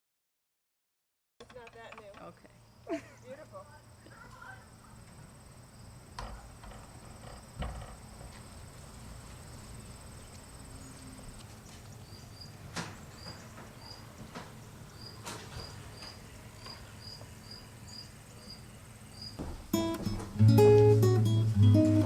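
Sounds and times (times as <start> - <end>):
faint knocks: 6.1 - 8.6, 19.4 - 20.9
strummed acoustic guitar music: 19.4 - 22.0.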